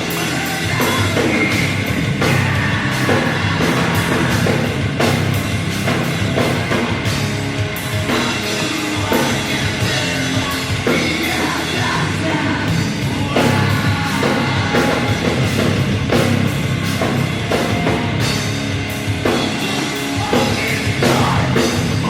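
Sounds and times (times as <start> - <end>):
person singing: 0.0 - 4.7, 8.1 - 15.8, 19.3 - 22.0
distorted guitars: 0.0 - 22.0
pounding drum kit: 0.0 - 22.0.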